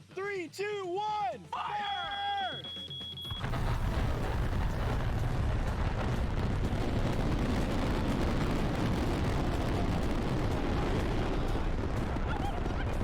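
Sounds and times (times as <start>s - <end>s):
firework barrage rumble: 3.3s - 13.0s.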